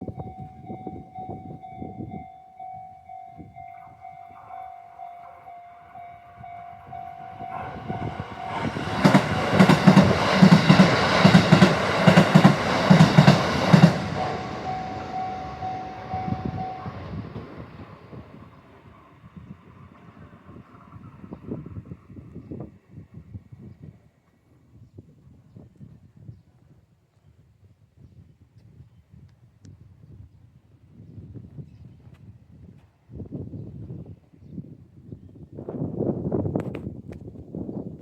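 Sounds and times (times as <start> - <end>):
level crossing bell ringing: 0.0 - 9.2, 14.1 - 17.4
train wheels clacking on rails: 4.0 - 18.1.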